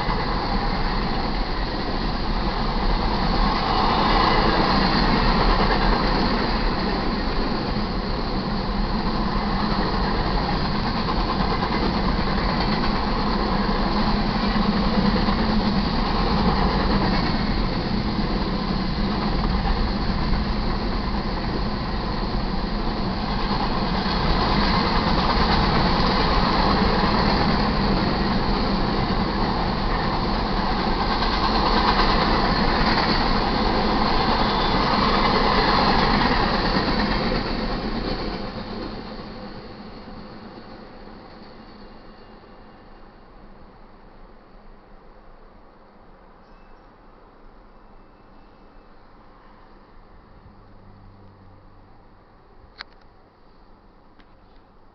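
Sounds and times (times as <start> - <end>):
freight train rolling past: 0.0 - 54.9.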